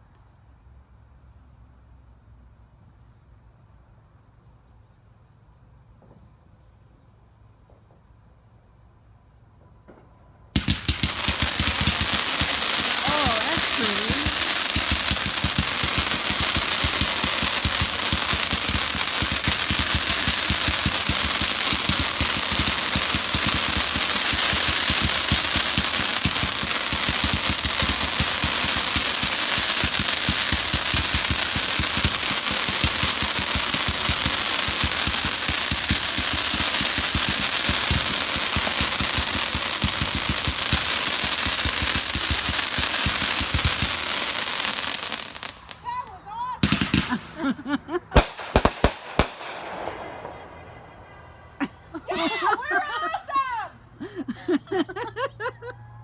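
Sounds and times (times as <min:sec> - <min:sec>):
firecrackers banging: 0:09.7 - 0:52.7.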